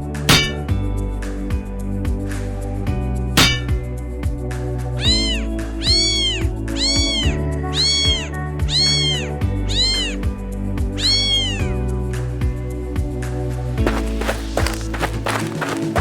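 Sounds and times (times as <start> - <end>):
background music with steady beat: 0.0 - 4.8.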